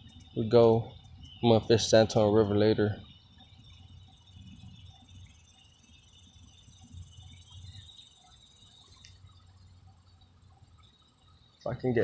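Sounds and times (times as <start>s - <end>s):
high-pitched insect chorus: 0.0s - 12.0s.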